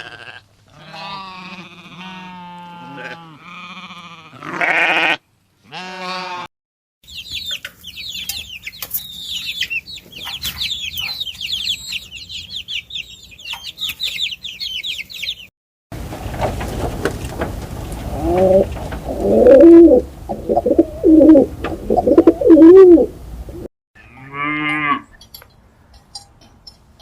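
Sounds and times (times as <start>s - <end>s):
sheep or goat bleating: 0.0s - 6.5s
chicks cheeping: 7.0s - 15.5s.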